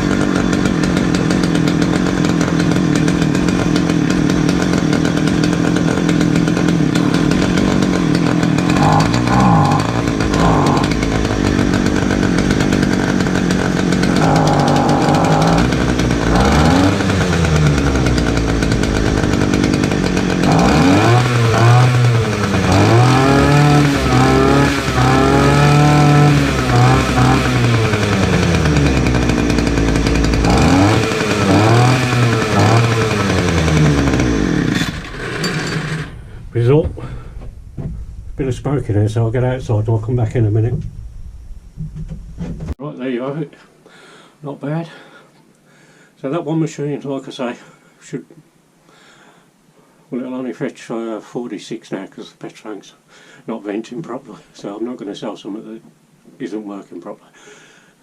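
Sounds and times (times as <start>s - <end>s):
two-stroke engine revving: 0.0s - 42.8s.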